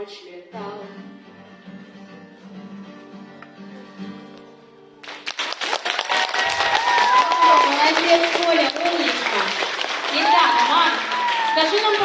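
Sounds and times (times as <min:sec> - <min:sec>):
acoustic guitar: 0:00.0 - 0:12.0
audience applause: 0:05.0 - 0:12.0.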